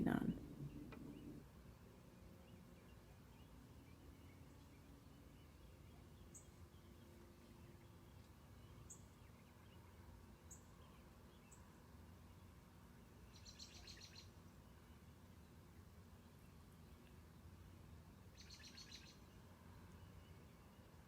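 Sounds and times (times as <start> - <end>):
birds chirping: 0.0 - 1.4
low background rumble: 0.0 - 1.6.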